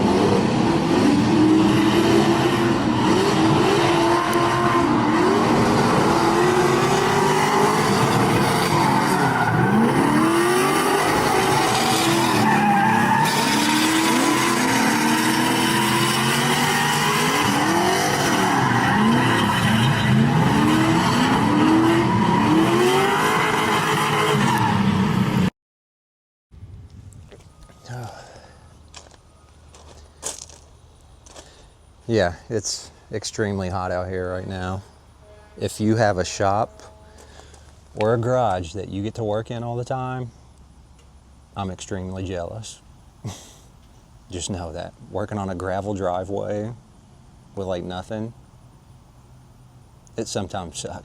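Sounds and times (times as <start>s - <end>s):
car engines revving: 0.0s - 25.5s
tyres skidding: 0.0s - 25.5s, 27.3s - 38.9s.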